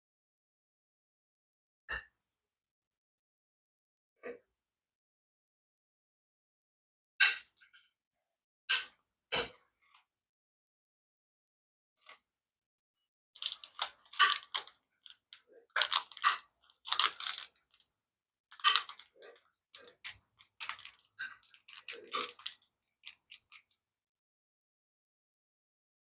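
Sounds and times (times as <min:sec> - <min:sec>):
plastic parts clicking and rattling: 0:13.4 - 0:17.9, 0:18.5 - 0:23.8.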